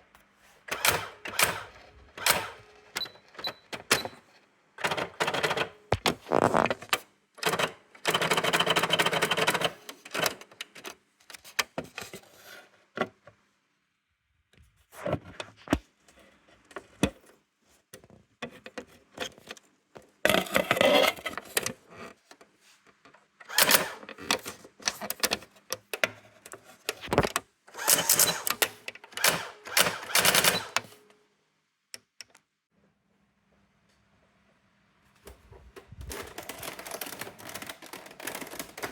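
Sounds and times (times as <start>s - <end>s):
electronic typewriter clicking: 27.8s - 30.9s.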